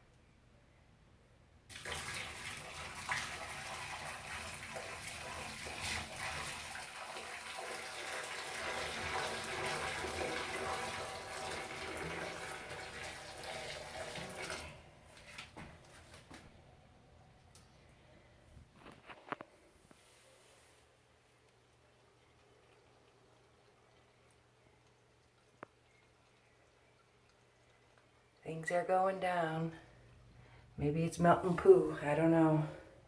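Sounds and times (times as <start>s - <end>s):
water pouring into toilet bowl: 1.7s - 15.4s, 22.0s - 28.4s.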